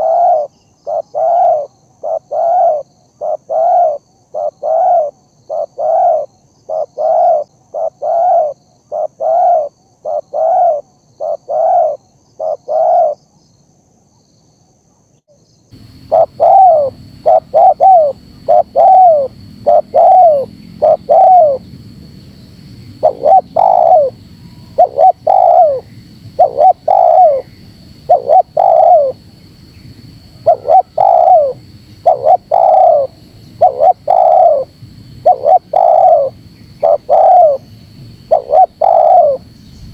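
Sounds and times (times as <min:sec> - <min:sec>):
dove cooing: 0:00.0 - 0:13.2, 0:15.8 - 0:39.9
faint high whine: 0:15.7 - 0:39.9.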